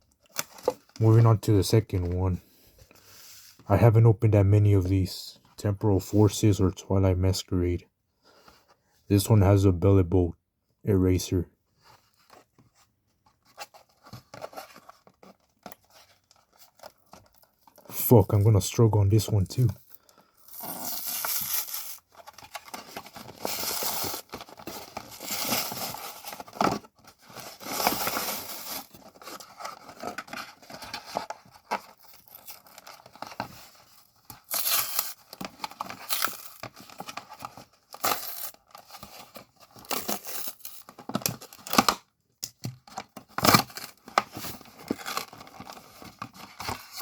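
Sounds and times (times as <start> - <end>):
plastic packaging tearing and crinkling: 20.4 - 42.0, 43.0 - 47.0.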